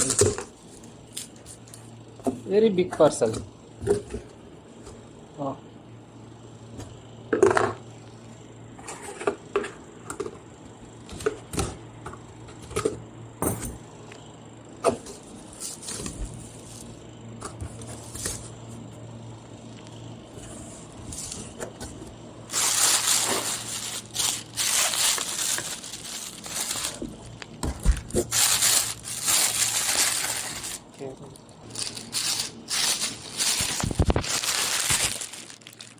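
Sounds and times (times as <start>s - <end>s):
packaging tearing and crinkling: 22.5s - 35.9s.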